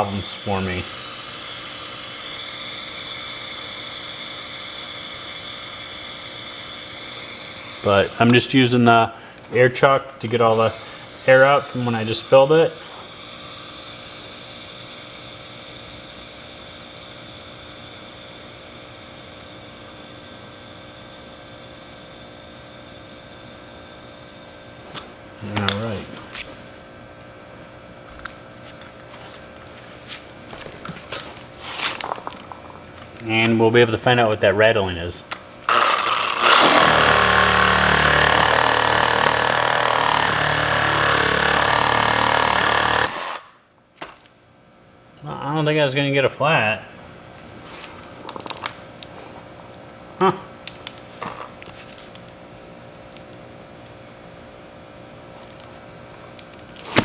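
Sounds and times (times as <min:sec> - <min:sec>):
air hissing out of tire valve: 0:00.0 - 0:08.4, 0:10.5 - 0:19.5.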